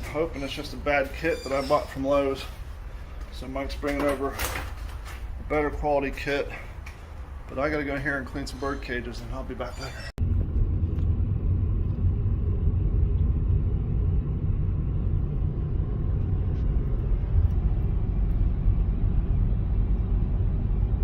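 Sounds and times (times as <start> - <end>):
vehicle road and engine drone: 10.2 - 21.0.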